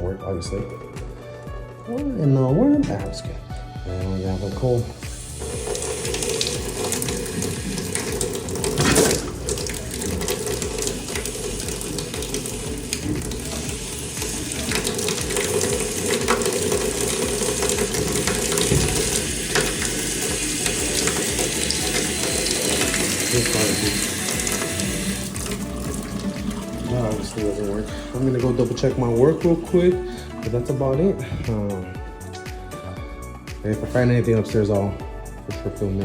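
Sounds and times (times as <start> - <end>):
water running into a sink: 4.0 - 31.9.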